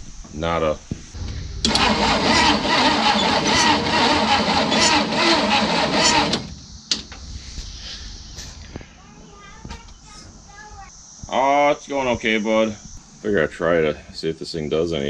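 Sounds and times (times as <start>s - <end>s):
starter cranking engine: 1.6s - 6.6s.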